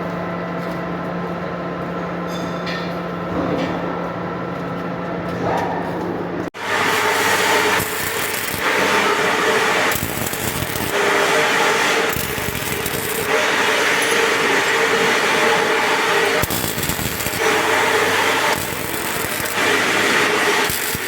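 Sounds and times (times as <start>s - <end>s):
welding arc crackling: 6.6s - 21.0s.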